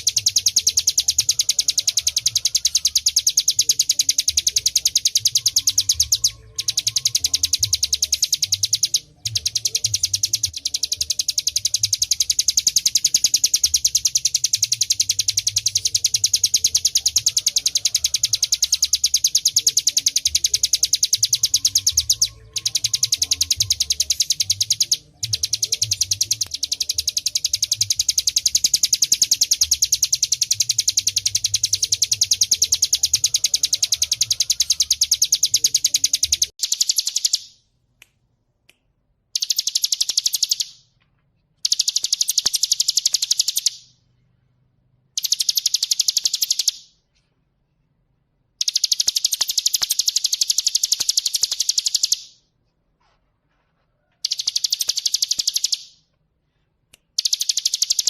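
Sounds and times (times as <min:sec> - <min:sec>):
bird singing high chipping notes: 0:00.0 - 0:37.6.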